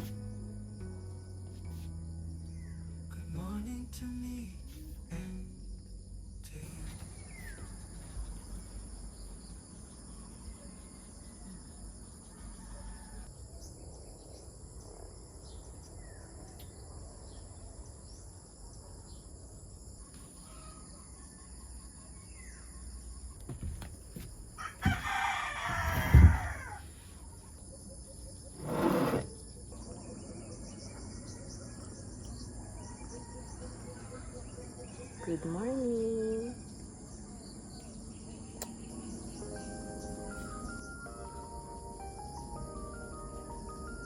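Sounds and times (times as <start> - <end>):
faint bird chirps: 1.1 - 19.3
rooster crowing: 11.5 - 13.3, 24.6 - 26.9, 32.5 - 34.4.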